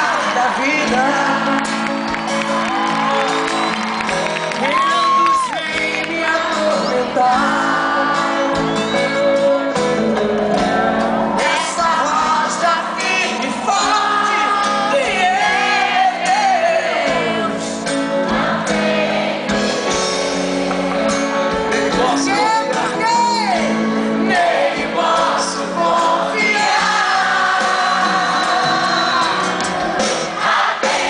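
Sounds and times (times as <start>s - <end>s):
person singing with vibrato: 0.0s - 2.0s, 4.6s - 10.2s, 21.2s - 29.8s
instrumental accompaniment: 0.9s - 31.0s.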